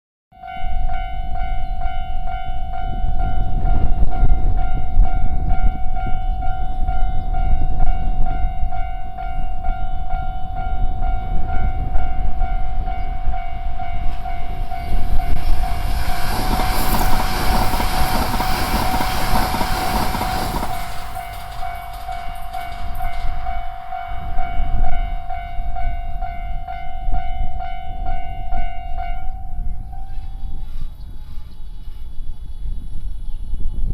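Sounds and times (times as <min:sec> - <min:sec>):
train rushing past: 0:10.4 - 0:28.2.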